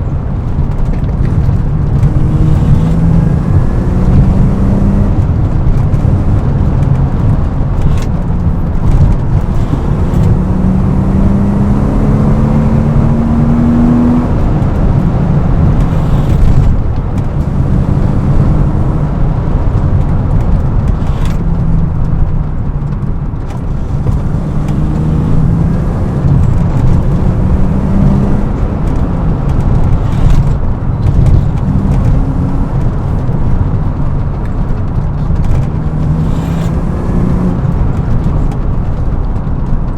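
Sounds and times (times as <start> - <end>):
car engine revving while driven: 0.0 - 39.9
low road rumble: 0.0 - 39.9.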